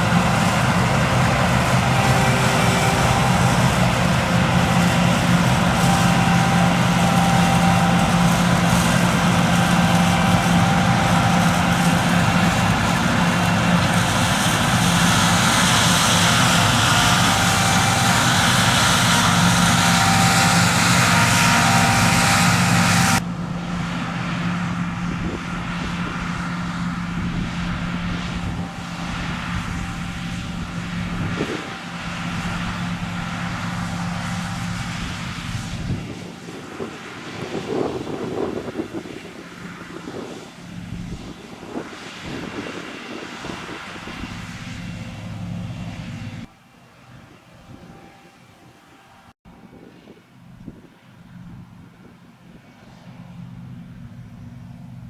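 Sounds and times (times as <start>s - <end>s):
threshing machinery rushing: 0.0s - 39.1s
combine harvester engine hum: 0.0s - 55.0s.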